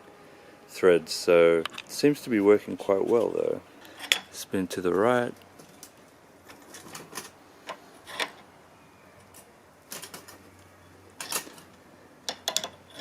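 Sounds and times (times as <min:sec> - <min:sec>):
metallic clicks and scrapes: 0:05.6 - 0:08.4, 0:11.2 - 0:13.0.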